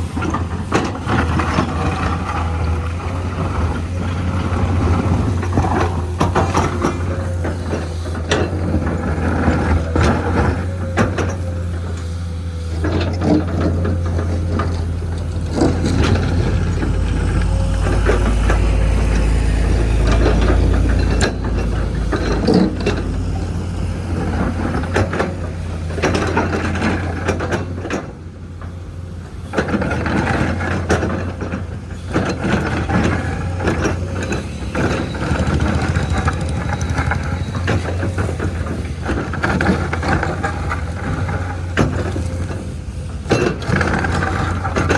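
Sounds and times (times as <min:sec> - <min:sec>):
diesel machinery engine drone: 0:00.0 - 0:44.9
metallic clanking and rattling: 0:12.7 - 0:28.8.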